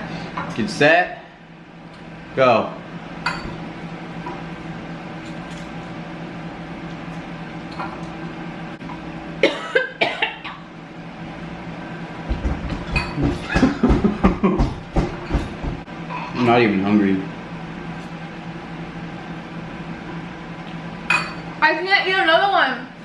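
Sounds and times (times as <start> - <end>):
steady low hum: 0.0 - 23.0
cough-like vocal burst: 9.4 - 10.6.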